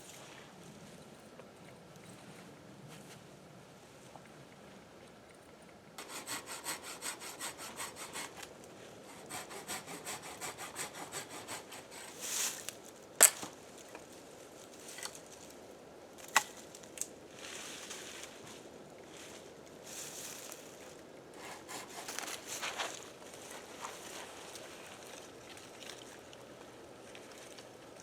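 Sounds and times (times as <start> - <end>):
saw cutting through wood: 6.0 - 8.5, 9.1 - 12.2, 21.4 - 22.5.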